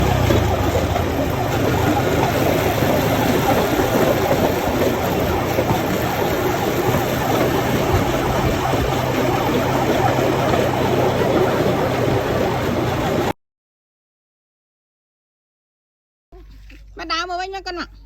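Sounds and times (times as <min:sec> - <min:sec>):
platform rolling on rails: 0:00.0 - 0:13.4
small engine running: 0:00.0 - 0:13.4.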